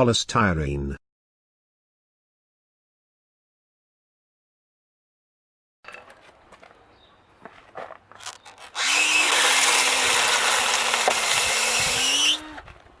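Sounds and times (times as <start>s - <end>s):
electric drill grinding: 8.4s - 12.8s.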